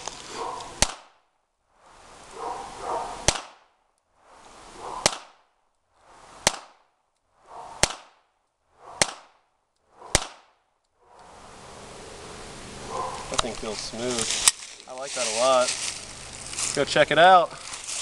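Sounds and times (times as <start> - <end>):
pistol shots: 0.8 - 1.2, 3.2 - 3.7, 5.0 - 5.4, 6.4 - 6.8, 7.8 - 8.2, 9.0 - 9.4, 10.1 - 10.6.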